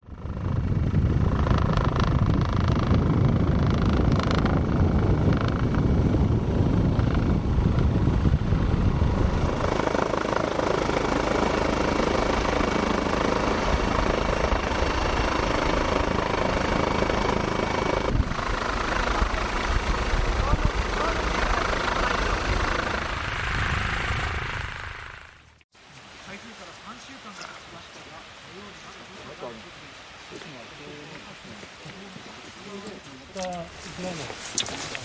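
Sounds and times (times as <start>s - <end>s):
helicopter rotor and engine: 0.0s - 25.6s.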